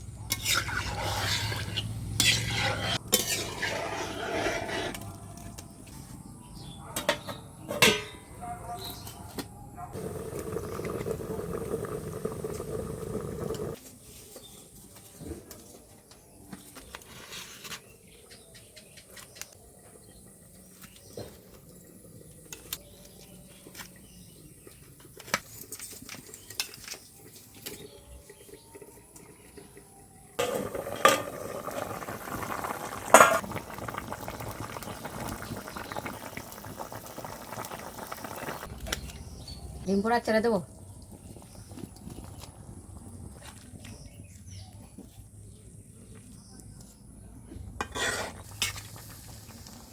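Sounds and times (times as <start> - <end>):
metal spoon scraping a pot: 0.3 - 5.2, 47.8 - 48.8
curry bubbling in a pot: 10.0 - 13.8, 24.5 - 39.5, 40.8 - 44.1.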